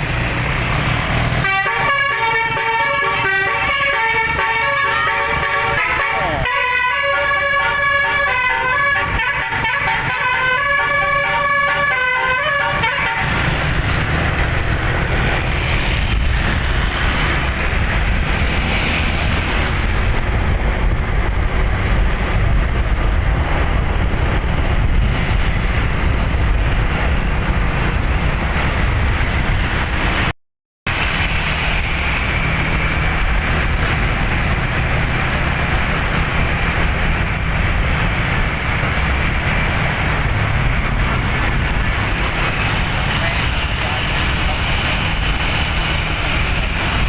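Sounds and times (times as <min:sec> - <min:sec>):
traffic rumble: 0:00.0 - 0:47.0
musical air horn tune: 0:01.4 - 0:13.4.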